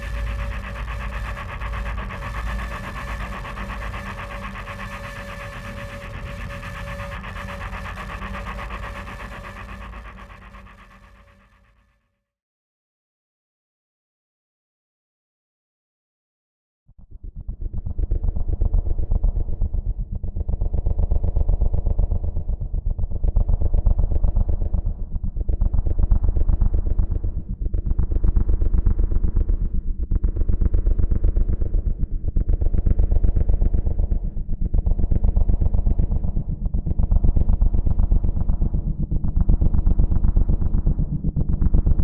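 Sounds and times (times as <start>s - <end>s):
drone propellers buzzing: 0.0s - 11.0s.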